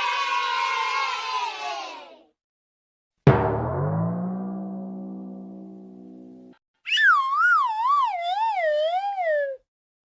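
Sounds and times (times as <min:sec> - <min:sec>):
deep struck gong note: 0:03.3 - 0:06.6
high wavering tone: 0:04.0 - 0:08.9.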